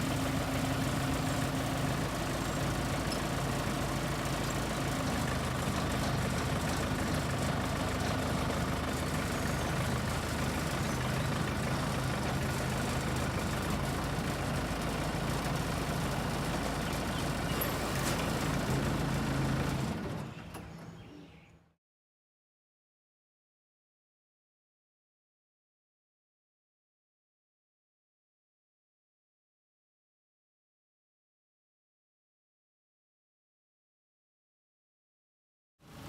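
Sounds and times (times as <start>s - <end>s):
backhoe diesel engine running: 0.0s - 21.4s.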